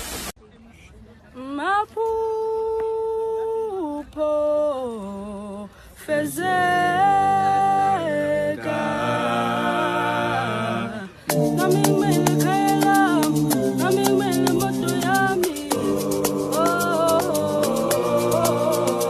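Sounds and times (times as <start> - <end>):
voices singing long held notes: 6.1 - 19.0.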